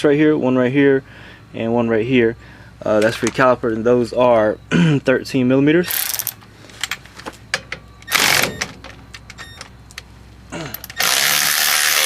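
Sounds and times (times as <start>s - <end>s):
socket wrench clicks and clinks: 5.9s - 7.0s, 10.8s - 11.2s.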